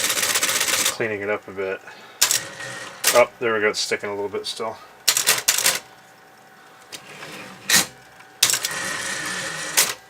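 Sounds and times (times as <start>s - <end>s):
typewriter clacks: 0.0s - 1.0s, 2.2s - 3.2s, 5.1s - 5.8s, 7.7s - 8.8s, 9.7s - 10.0s
typewriter motor whir: 0.0s - 1.0s, 2.2s - 3.3s, 5.1s - 5.8s, 7.3s - 10.0s
typewriter click: 5.1s - 5.8s, 7.7s - 8.8s.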